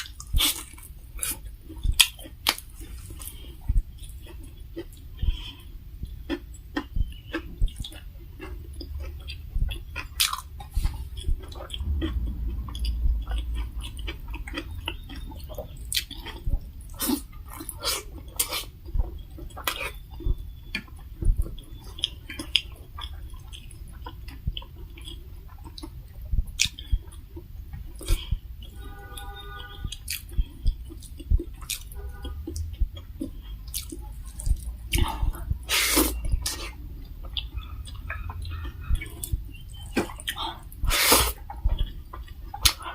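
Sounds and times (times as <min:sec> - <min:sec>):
crunchy clicks while eating: 0:00.0 - 0:35.5, 0:36.2 - 0:42.9
wet chewing: 0:00.0 - 0:42.9
lip smacks: 0:29.8 - 0:42.9.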